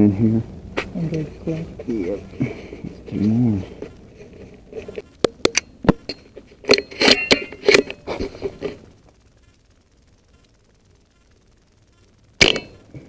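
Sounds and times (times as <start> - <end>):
rustling: 0.0 - 13.0
air rifle handling clicks: 4.3 - 8.8.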